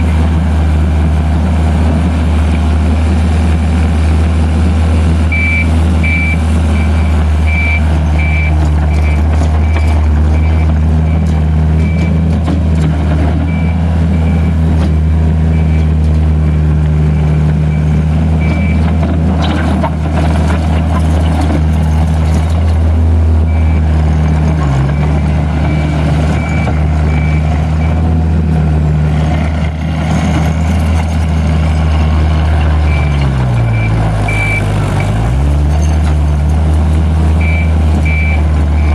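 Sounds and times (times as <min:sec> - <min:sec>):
diesel engine running: 0:00.0 - 0:38.9
backup alarm beeping: 0:05.3 - 0:09.9, 0:32.9 - 0:34.7, 0:37.4 - 0:38.9.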